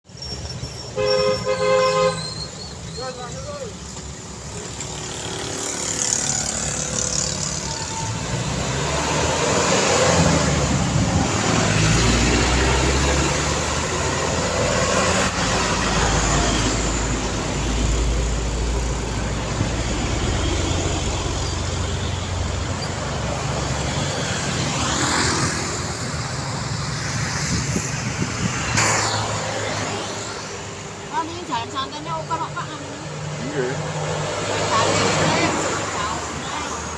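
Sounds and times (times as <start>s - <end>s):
road traffic passing: 0.0s - 36.9s
heavy vehicle engine rumble: 0.1s - 24.9s.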